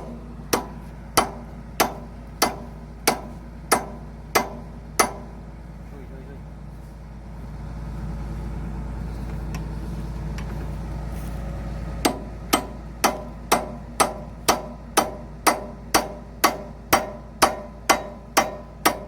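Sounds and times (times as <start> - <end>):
hammer striking steel: 0.0 - 5.4, 12.0 - 19.0
low engine hum: 0.0 - 19.0.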